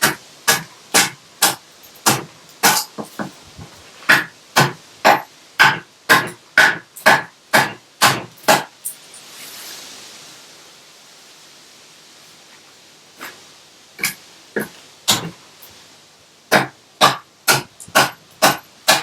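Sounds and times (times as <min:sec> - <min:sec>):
axe chopping wooden log: 0:00.0 - 0:02.8, 0:04.1 - 0:08.7, 0:14.6 - 0:15.3, 0:16.5 - 0:19.0.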